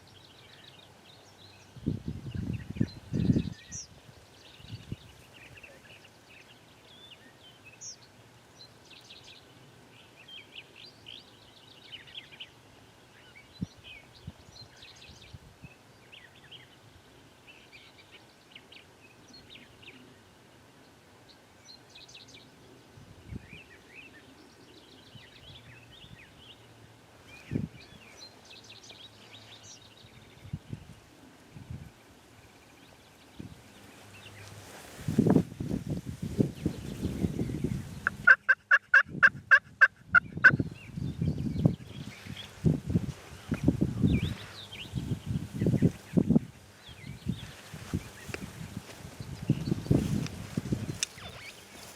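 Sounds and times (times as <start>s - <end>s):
songbirds chirping and singing: 0.0s - 34.9s, 36.4s - 51.9s.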